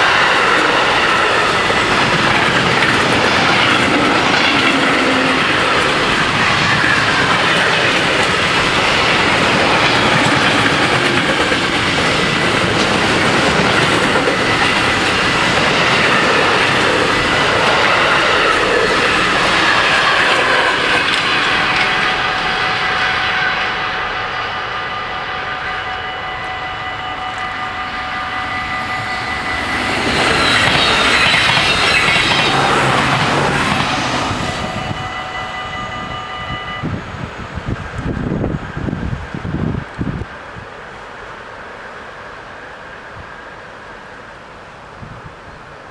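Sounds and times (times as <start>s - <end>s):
train wheels clattering on rails: 0.0s - 40.2s
high ringing tones: 19.2s - 37.5s.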